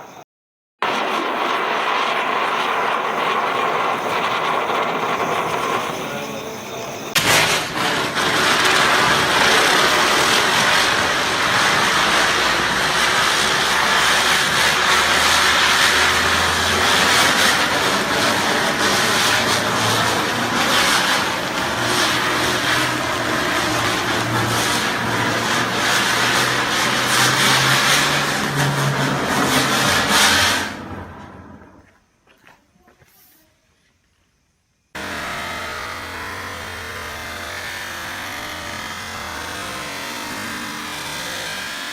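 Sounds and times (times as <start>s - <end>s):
firework hissing and crackling: 0.8s - 32.2s, 34.9s - 41.9s
low whir rising in pitch: 1.4s - 31.9s, 35.0s - 41.9s.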